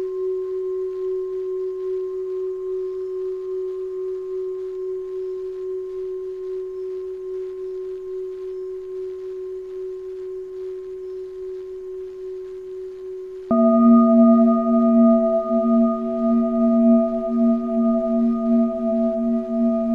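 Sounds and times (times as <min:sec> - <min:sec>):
singing bowl ringing: 0:13.5 - 0:19.9.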